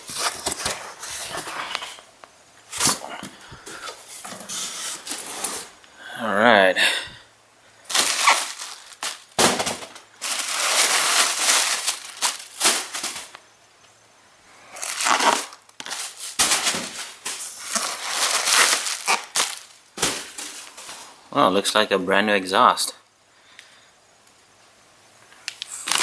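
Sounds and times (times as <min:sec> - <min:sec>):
cardboard box being torn open: 0:14.8 - 0:17.0.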